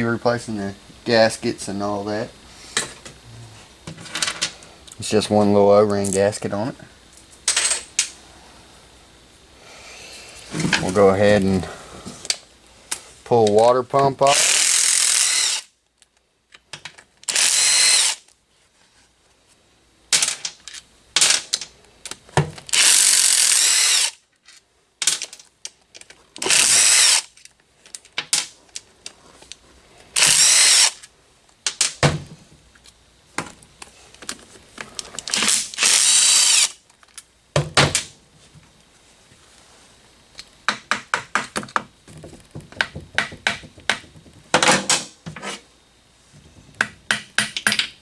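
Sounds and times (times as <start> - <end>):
power drill spinning bolts: 14.3 - 15.7, 17.2 - 18.2, 22.6 - 24.2, 26.4 - 27.4, 30.2 - 31.1, 35.1 - 36.8.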